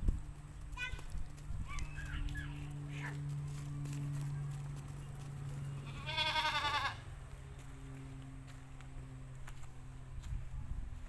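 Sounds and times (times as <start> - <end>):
steady low hum: 0.0 - 11.0
goat bleating: 5.8 - 7.1.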